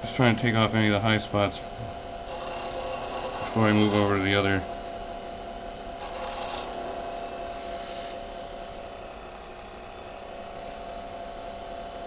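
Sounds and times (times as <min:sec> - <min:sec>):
steady hum: 0:00.0 - 0:12.0
abrasive scraping on metal ring: 0:02.3 - 0:04.1.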